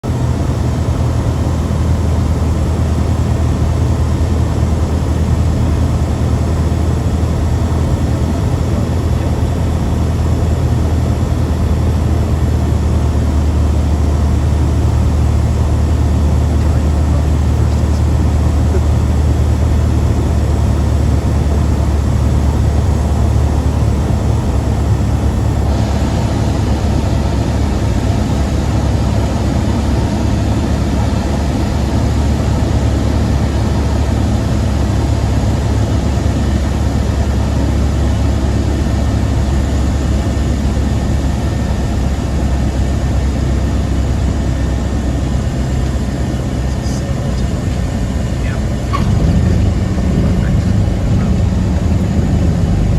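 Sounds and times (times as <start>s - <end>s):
aircraft engine and propeller drone: 0.0s - 52.9s.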